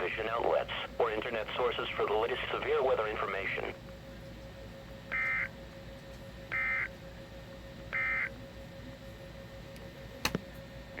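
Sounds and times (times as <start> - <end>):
faint steady hum: 0.0 - 11.0
two-tone digital squawks: 6.5 - 6.9, 8.0 - 8.3.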